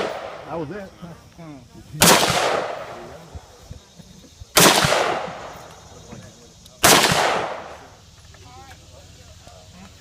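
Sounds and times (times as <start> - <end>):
gunshots: 0.0 - 0.6, 2.0 - 3.2, 4.5 - 5.7, 6.8 - 7.9.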